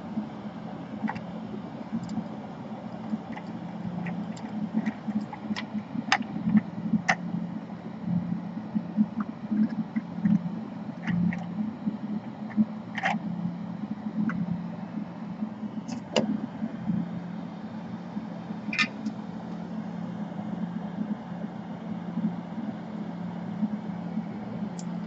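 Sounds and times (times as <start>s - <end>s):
extractor fan hum: 0.0s - 25.0s
small clicks and taps: 1.0s - 1.3s, 3.0s - 7.3s.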